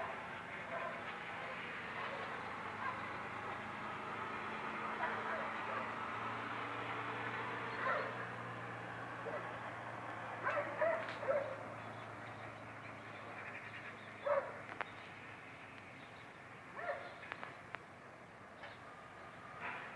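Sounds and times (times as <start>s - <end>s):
dog barking: 7.8s - 8.2s, 9.3s - 9.5s, 10.4s - 11.6s, 14.2s - 14.6s, 16.8s - 17.2s.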